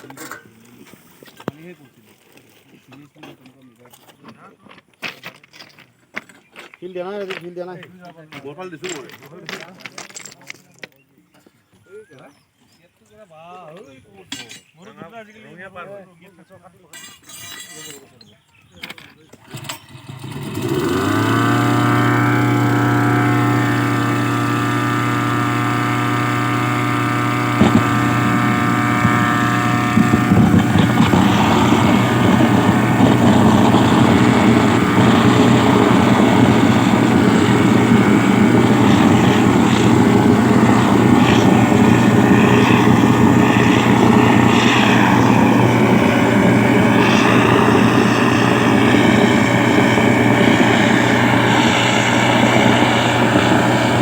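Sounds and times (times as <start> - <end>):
small engine running: 19.4 - 54.0
rough rushing noise: 20.6 - 54.0.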